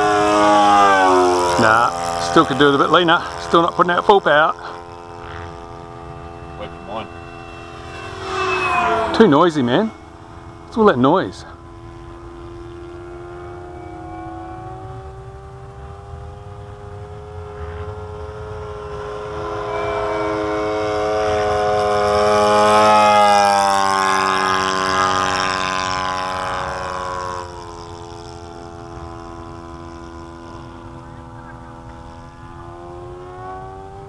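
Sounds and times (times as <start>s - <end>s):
model plane engine droning: 0.0s - 34.0s.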